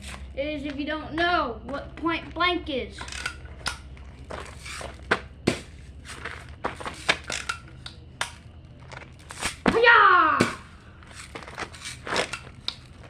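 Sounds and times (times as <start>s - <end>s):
sharp clicks and crinkling: 3.0s - 9.8s, 11.0s - 13.0s.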